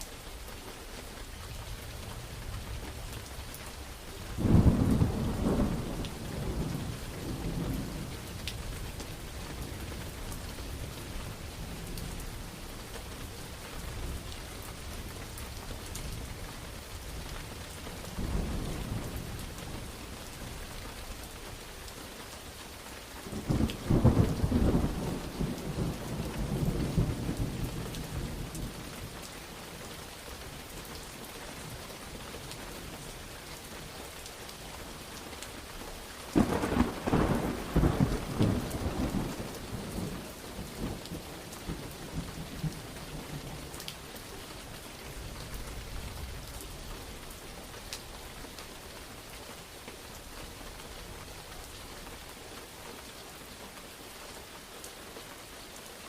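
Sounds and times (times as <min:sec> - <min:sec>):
steady rain: 0:00.0 - 0:56.0
thunder rumbling: 0:04.4 - 0:08.4, 0:23.3 - 0:28.8, 0:36.4 - 0:43.7.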